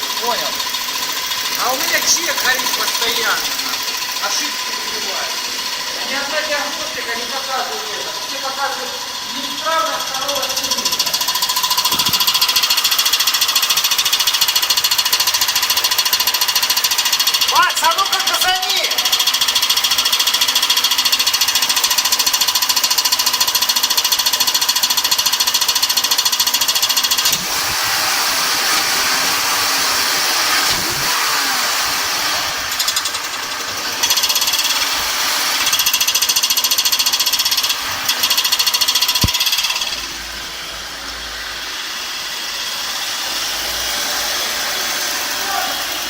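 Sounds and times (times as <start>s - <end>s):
engine knocking clatter: 0.0s - 40.2s
car engine running: 7.0s - 13.7s.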